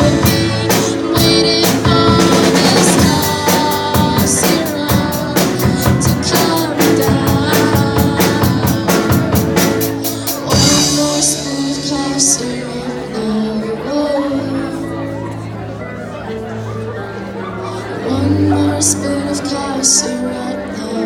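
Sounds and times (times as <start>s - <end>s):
drum kit beat: 0.0s - 11.5s
rock band playing: 0.0s - 21.0s.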